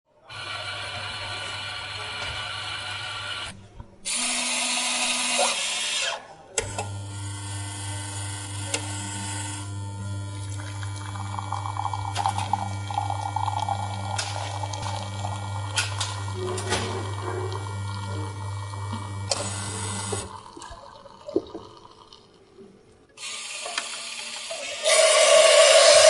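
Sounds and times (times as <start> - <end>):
coffeemaker hissing: 0.3 - 3.5, 8.6 - 22.0, 23.2 - 26.0
coffeemaker humming: 0.3 - 3.5, 6.6 - 22.1, 23.2 - 26.0
coffee trickling and gurgling: 10.4 - 22.5.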